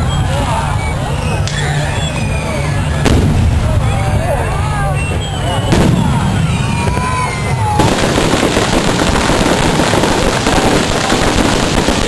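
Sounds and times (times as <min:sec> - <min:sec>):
whistling firework shells: 0:00.8 - 0:12.0
crackle of rapid firework pops: 0:03.0 - 0:03.5, 0:05.7 - 0:07.2, 0:07.8 - 0:12.0.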